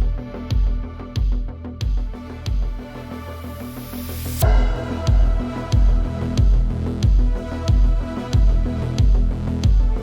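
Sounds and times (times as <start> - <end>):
heavy kick drum: 0.0 - 2.8, 4.4 - 10.0
deep bass: 0.0 - 10.0
electronic music: 0.0 - 10.0.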